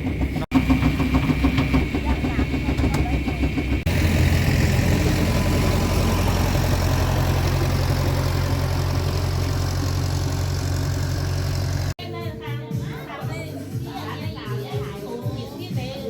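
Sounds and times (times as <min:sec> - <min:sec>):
engine humming: 0:00.0 - 0:12.0.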